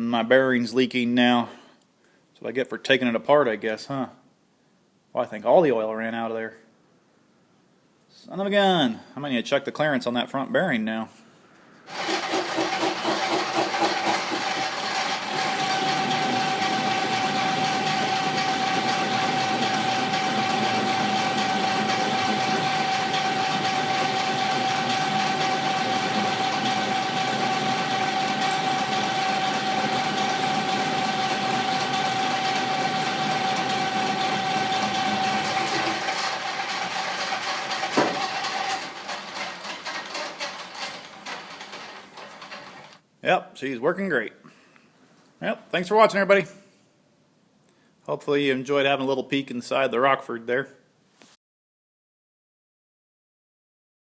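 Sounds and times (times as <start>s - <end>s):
lathe clunk: 11.9s - 43.0s
metal lathe gear whine: 11.9s - 43.0s.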